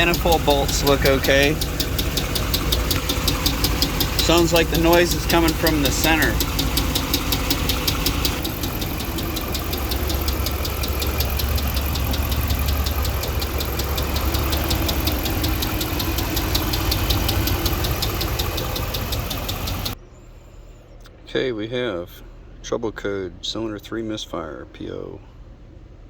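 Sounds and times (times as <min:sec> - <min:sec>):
engine idling: 0:00.0 - 0:20.0
fast steady engine ticking: 0:00.0 - 0:20.0.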